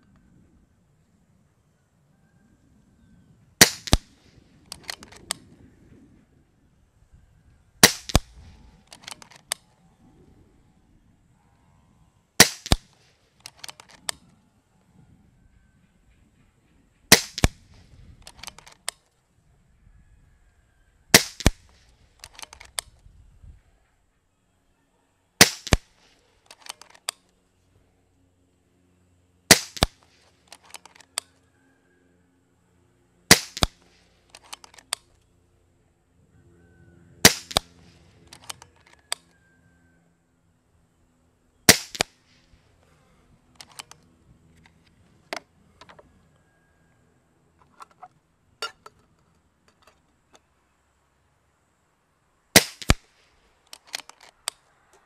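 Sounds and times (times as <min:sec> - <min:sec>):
air rifle shots: 0:03.6 - 0:05.4, 0:07.8 - 0:09.6, 0:12.4 - 0:14.2, 0:17.1 - 0:18.9, 0:21.1 - 0:22.9, 0:25.4 - 0:27.1, 0:29.5 - 0:30.8, 0:33.3 - 0:34.9, 0:37.2 - 0:38.6, 0:41.7 - 0:42.5, 0:52.5 - 0:54.3
rifle action clicks: 0:03.6 - 0:05.4, 0:07.8 - 0:09.8, 0:12.4 - 0:14.4, 0:17.1 - 0:19.1, 0:21.1 - 0:23.0, 0:25.4 - 0:27.4, 0:29.5 - 0:31.3, 0:33.3 - 0:35.3, 0:37.2 - 0:39.4, 0:41.7 - 0:42.5, 0:43.5 - 0:46.0, 0:52.6 - 0:54.6.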